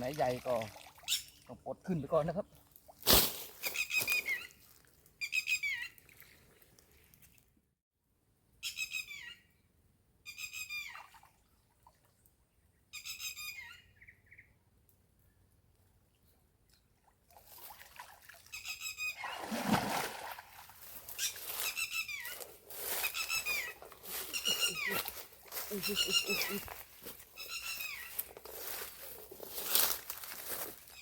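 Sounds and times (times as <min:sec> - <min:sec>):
high squeaky animal calls: 0:21.2 - 0:26.8, 0:27.4 - 0:28.3.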